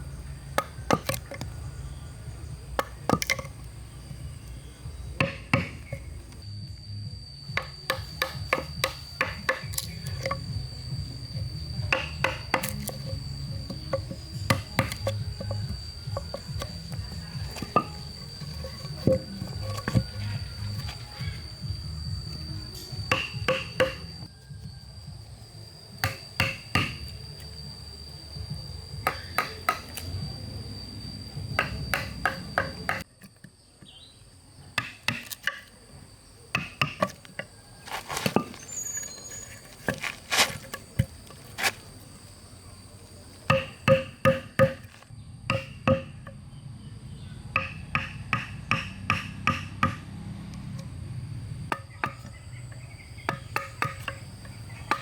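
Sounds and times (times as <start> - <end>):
insects shrilling: 0.0 - 49.5, 50.6 - 55.0
hand tool striking wood: 0.6 - 1.5, 2.8 - 3.6, 5.2 - 6.1, 7.6 - 10.6, 11.8 - 21.3, 22.4 - 24.2, 26.0 - 27.1, 29.0 - 30.0, 31.6 - 33.3, 34.8 - 35.8, 36.5 - 41.9, 43.5 - 46.4, 47.6 - 50.1, 53.2 - 55.0.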